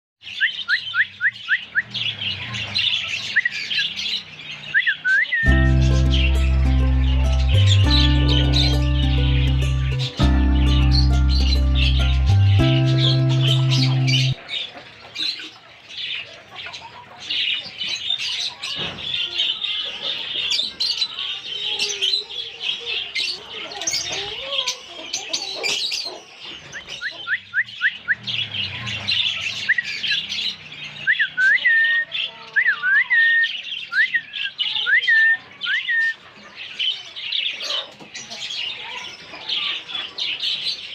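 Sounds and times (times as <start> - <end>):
parrots squawking and chattering: 5.4 - 15.5, 19.4 - 32.6.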